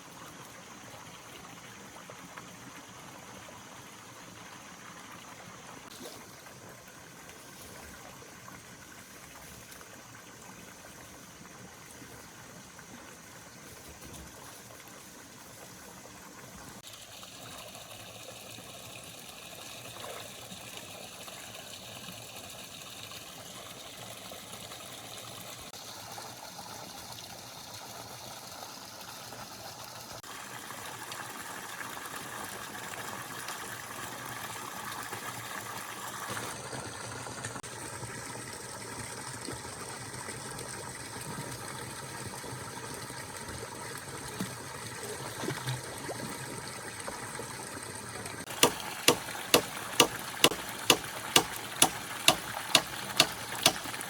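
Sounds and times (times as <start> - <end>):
hand tool striking: 48.5 - 54.0.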